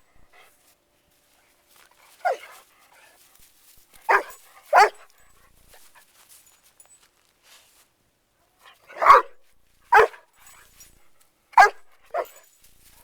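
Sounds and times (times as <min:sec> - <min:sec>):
puppy barking: 0:02.2 - 0:02.6, 0:04.1 - 0:05.1, 0:08.9 - 0:10.3, 0:11.6 - 0:12.4.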